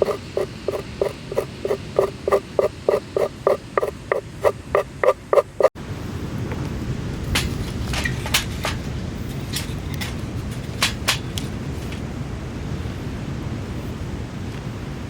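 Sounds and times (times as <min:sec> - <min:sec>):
sharp clicks and taps: 0:00.0 - 0:05.7
wind rumble on microphone: 0:05.8 - 0:15.0.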